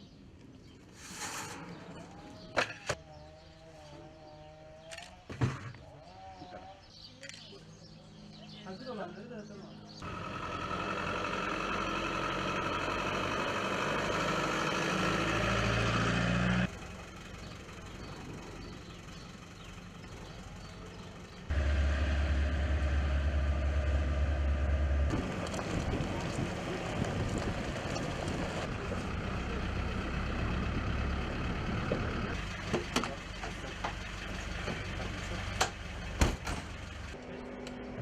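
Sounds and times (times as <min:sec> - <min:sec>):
vehicle engine running: 0:10.0 - 0:38.0.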